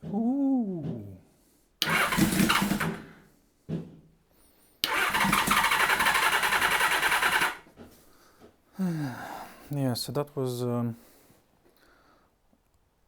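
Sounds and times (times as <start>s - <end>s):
engine cranking on starter: 1.8s - 3.2s, 4.8s - 7.7s.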